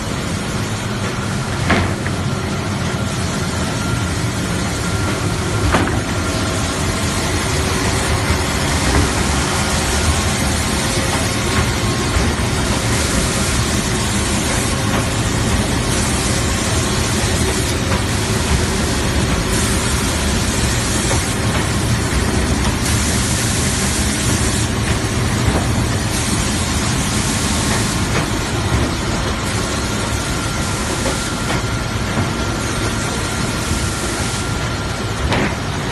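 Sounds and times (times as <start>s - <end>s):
belt sanding machine running: 2.4s - 31.1s.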